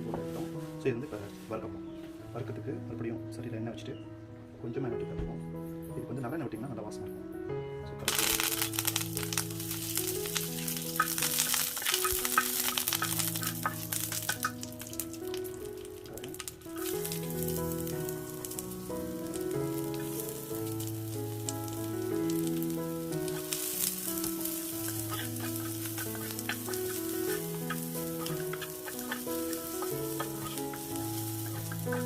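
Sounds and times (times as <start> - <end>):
slow background music with bass: 0.0 - 32.0
onions sizzling in hot oil: 8.1 - 32.0.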